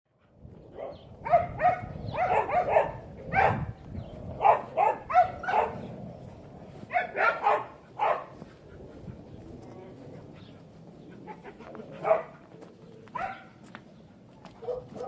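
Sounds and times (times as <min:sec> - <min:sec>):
dogs barking: 0:00.7 - 0:06.1, 0:06.8 - 0:08.6, 0:11.0 - 0:13.7, 0:14.5 - 0:15.0.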